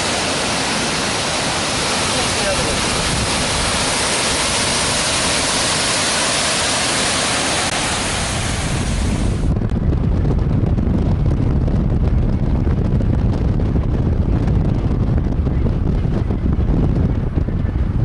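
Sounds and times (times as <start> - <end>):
waterfall rushing: 0.0 - 9.5
wind buffeting microphone: 0.0 - 18.0.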